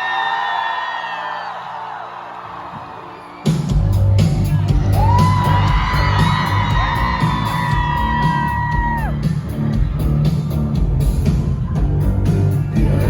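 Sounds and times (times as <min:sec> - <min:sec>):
rock band music: 0:03.5 - 0:13.0.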